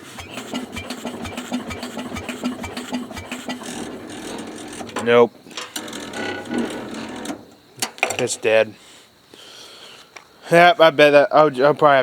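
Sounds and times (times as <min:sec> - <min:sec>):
electric starter cranking engine: 0:00.0 - 0:07.6.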